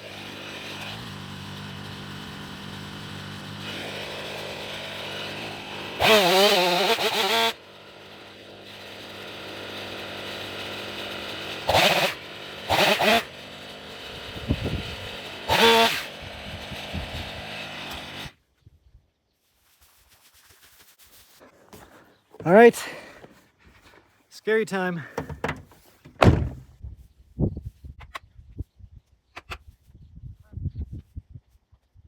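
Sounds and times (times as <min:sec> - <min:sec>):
chainsaw idling and revving: 0:00.0 - 0:18.4.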